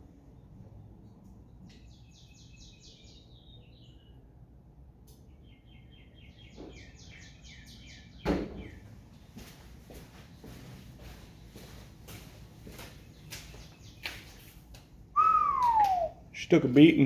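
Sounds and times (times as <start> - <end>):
songbird chirping: 0.2 - 4.4, 5.1 - 9.4, 12.6 - 16.2.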